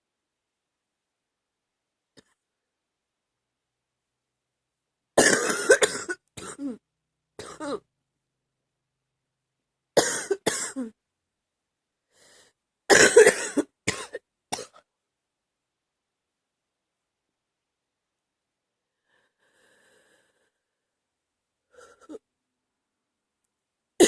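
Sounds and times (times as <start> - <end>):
woman coughing: 5.2 - 6.8, 7.4 - 7.8, 10.0 - 11.0, 12.9 - 14.8.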